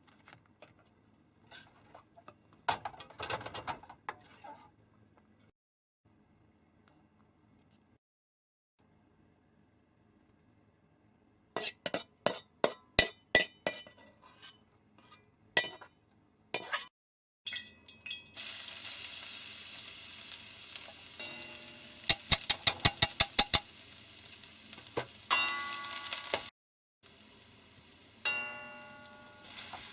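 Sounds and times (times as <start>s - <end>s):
utensils clinking on cookware: 11.6s - 15.9s, 16.6s - 16.9s, 20.9s - 23.7s, 25.3s - 26.5s
food sizzling in a hot pan: 18.1s - 29.9s
stirring taps: 22.1s - 23.7s.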